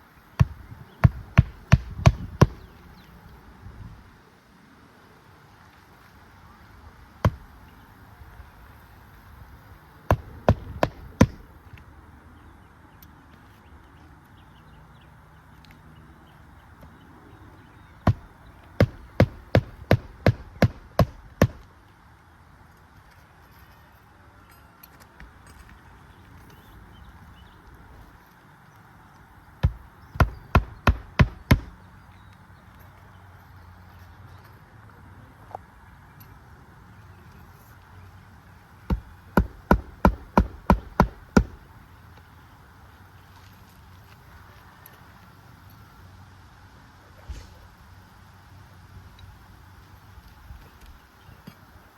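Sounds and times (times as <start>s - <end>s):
hammer striking roofing nail: 0.4s - 2.7s, 7.2s - 7.6s, 10.1s - 11.5s, 18.0s - 21.7s, 29.6s - 31.8s, 38.9s - 41.7s.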